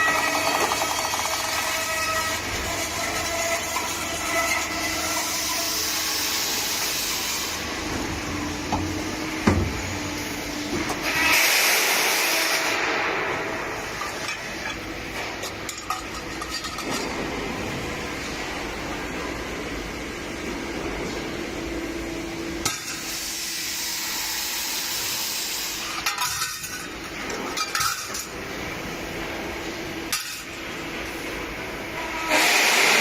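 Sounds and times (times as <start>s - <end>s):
pipe-cutting machine running: 0.0s - 18.1s, 31.8s - 33.0s.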